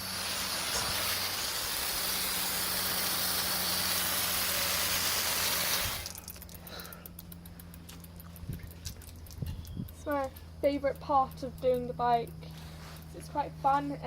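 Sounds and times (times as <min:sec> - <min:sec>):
hose nozzle spraying water: 0:00.0 - 0:07.7.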